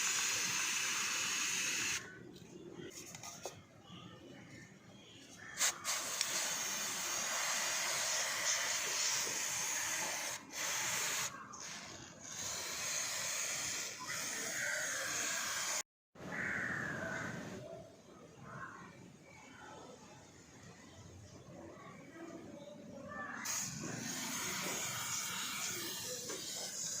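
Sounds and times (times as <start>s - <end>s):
aerosol can spraying: 5.6s - 11.4s.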